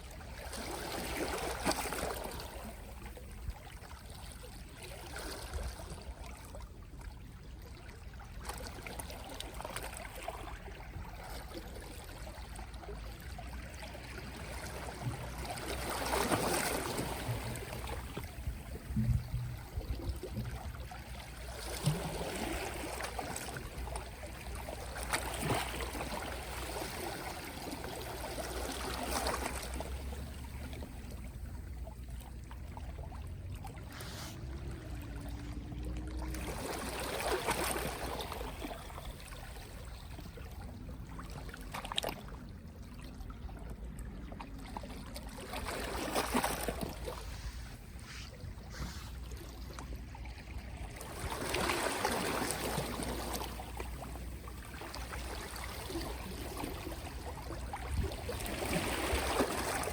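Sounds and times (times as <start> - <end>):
sea waves lapping on shore: 0.0 - 59.9
steady low rumble: 29.8 - 37.0.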